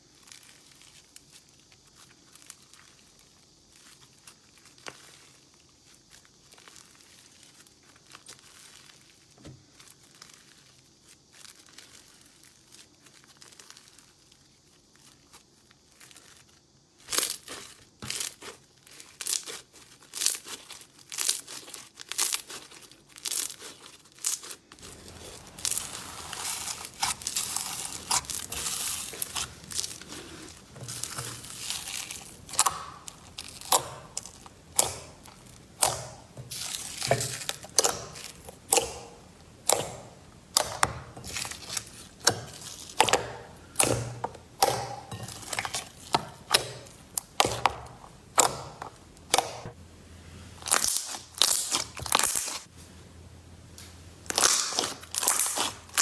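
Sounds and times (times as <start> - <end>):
slime crinkling and crackling: 0.0 - 49.8, 50.4 - 52.8, 53.7 - 56.0
slime popping and crunching: 17.1 - 49.8, 50.6 - 52.7, 54.2 - 56.0.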